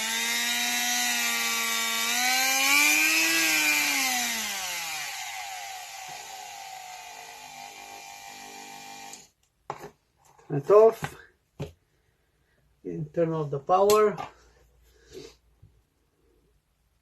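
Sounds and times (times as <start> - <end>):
rotary tool motor whining: 0.0 - 9.3.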